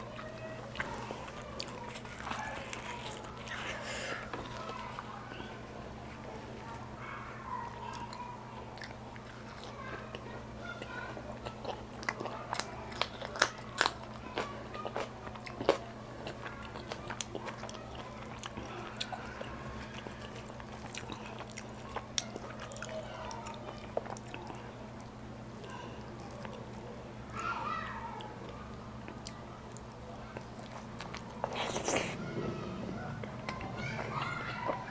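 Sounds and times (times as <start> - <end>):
chewing and biting food: 0.0 - 5.2, 6.2 - 26.9, 28.1 - 32.5
steady low hum: 28.0 - 34.9.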